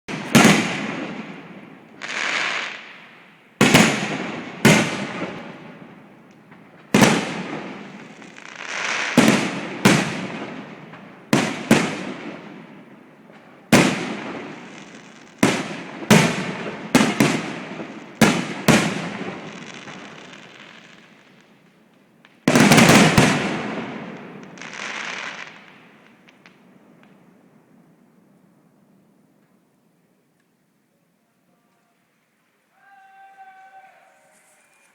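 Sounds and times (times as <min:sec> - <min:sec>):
fireworks bangs: 0:00.1 - 0:28.0.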